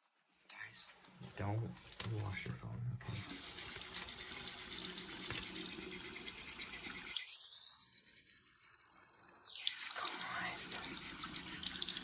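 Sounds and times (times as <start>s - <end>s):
tap water running: 3.1s - 12.0s.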